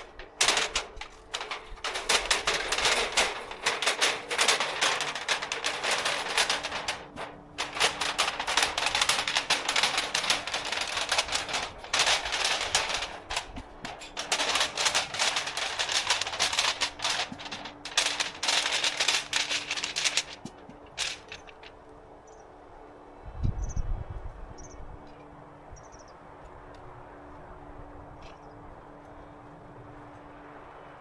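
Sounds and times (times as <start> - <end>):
dry wood crackling and snapping: 0.0 - 21.9.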